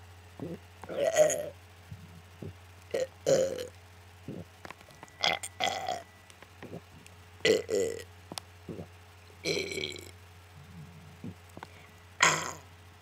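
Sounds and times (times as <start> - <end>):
girl burping: 0.4 - 1.5, 12.2 - 12.6.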